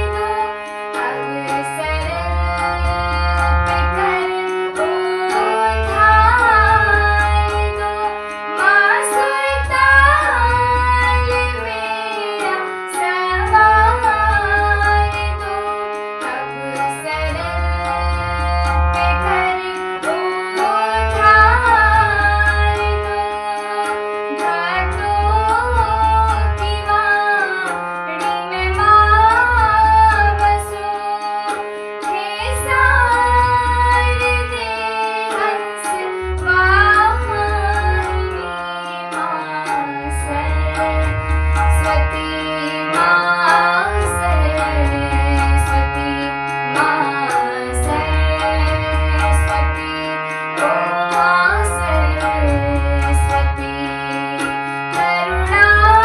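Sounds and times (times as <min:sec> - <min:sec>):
gliding melodic line: 0:00.0 - 0:50.1
tabla: 0:00.0 - 0:56.0
pulsing bass: 0:01.9 - 0:04.2, 0:05.8 - 0:08.1, 0:09.4 - 0:11.7, 0:13.5 - 0:15.7, 0:17.1 - 0:19.5, 0:21.0 - 0:23.3, 0:24.9 - 0:27.0, 0:28.6 - 0:30.8, 0:32.7 - 0:34.6, 0:40.1 - 0:42.4, 0:47.6 - 0:50.0.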